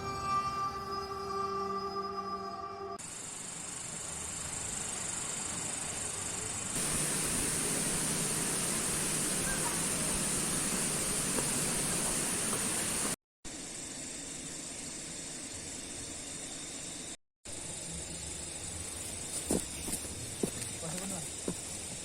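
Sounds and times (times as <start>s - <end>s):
high insect trill: 0.0s - 22.0s
steady rain hiss: 3.1s - 17.0s.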